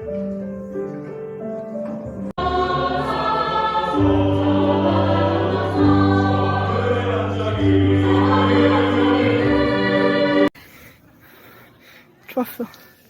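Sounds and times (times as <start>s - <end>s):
choral music with sustained voices: 1.9s - 10.6s.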